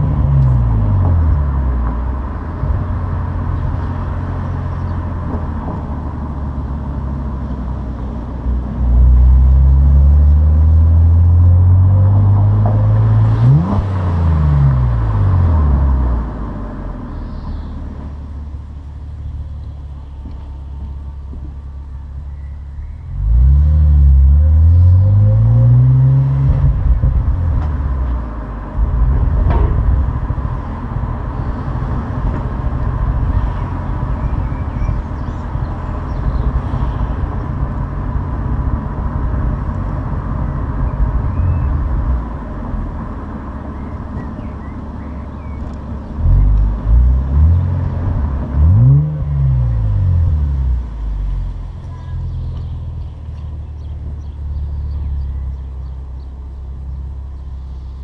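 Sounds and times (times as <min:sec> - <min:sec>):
car engine revving: 0:08.5 - 0:16.5, 0:23.1 - 0:34.2, 0:41.3 - 0:51.7.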